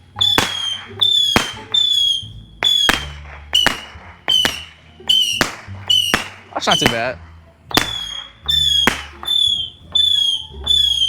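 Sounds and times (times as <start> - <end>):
firework cracks: 0.0 - 11.0
firework whistles: 0.0 - 11.0.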